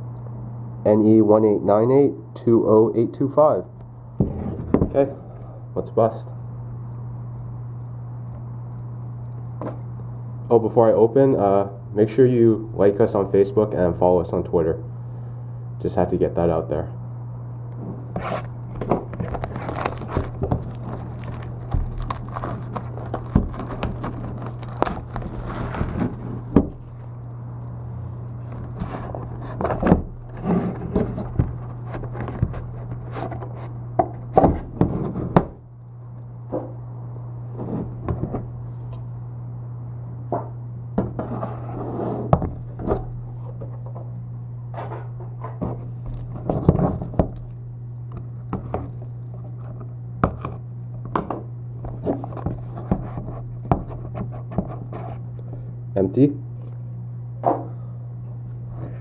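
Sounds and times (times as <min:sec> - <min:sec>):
steady low hum: 0:00.0 - 0:59.0
packaging scraping and crinkling: 0:17.8 - 0:27.1, 0:28.4 - 0:33.8
packaging tearing rustle: 0:18.2 - 0:27.1.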